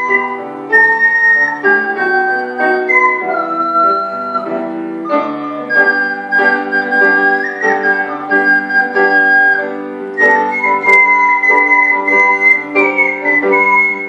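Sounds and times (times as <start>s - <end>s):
piano: 0.0s - 14.0s.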